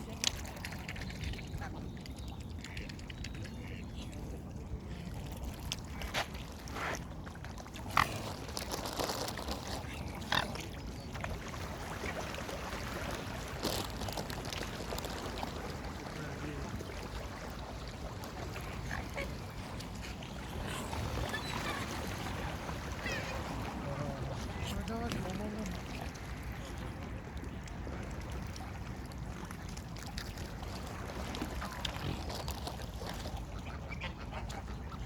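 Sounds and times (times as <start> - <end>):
waterfowl calling: 18.5 - 24.8.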